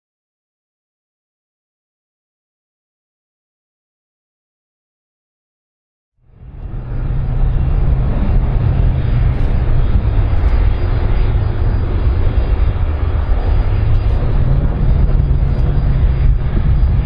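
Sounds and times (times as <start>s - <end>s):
aircraft engine rumble: 6.2s - 17.0s.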